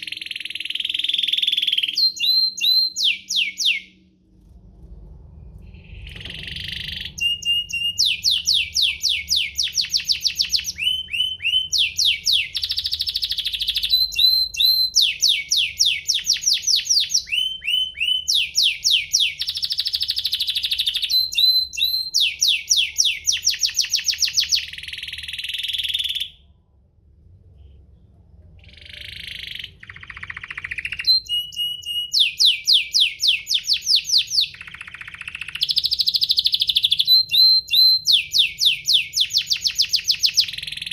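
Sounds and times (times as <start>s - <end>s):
canary singing trills: 0.0s - 4.0s, 5.7s - 26.5s, 28.6s - 40.9s.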